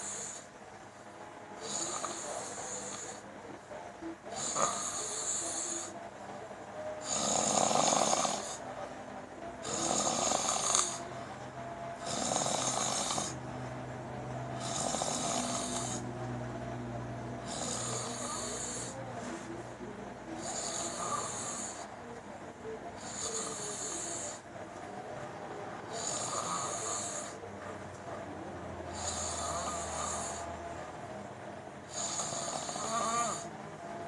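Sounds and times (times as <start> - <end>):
person snoring: 0.0 - 0.4, 1.6 - 3.2, 4.3 - 6.0, 7.0 - 8.6, 9.6 - 11.1, 12.0 - 13.4, 14.6 - 16.1, 17.4 - 19.0, 20.4 - 21.9, 23.0 - 24.4, 25.9 - 27.4, 28.9 - 30.6, 31.9 - 33.5.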